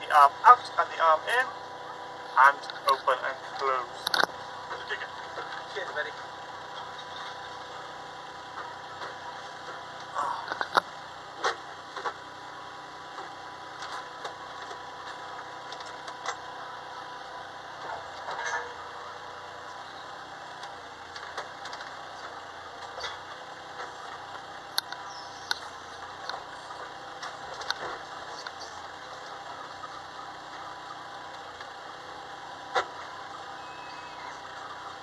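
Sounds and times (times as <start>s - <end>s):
clicks and knocks of controls: 2.6s - 6.2s, 8.5s - 12.2s, 23.8s - 29.3s
toy excavator motor running: 6.6s - 35.0s.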